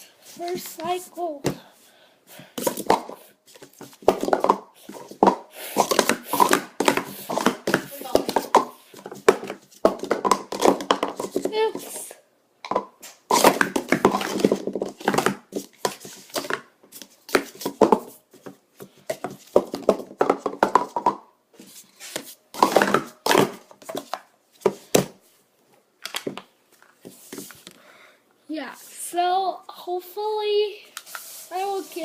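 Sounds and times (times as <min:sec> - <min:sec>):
plastic cups clattering: 0:02.6 - 0:21.3, 0:22.0 - 0:25.1.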